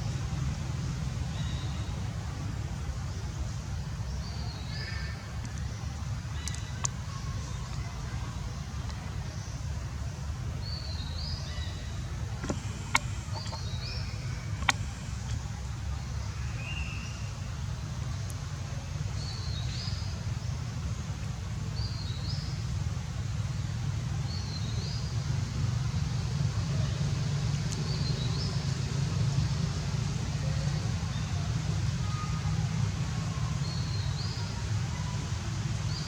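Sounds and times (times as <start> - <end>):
steady low rumble: 2.1 - 19.2
bird chirping: 12.4 - 15.4
sharp clicks: 12.4 - 15.4.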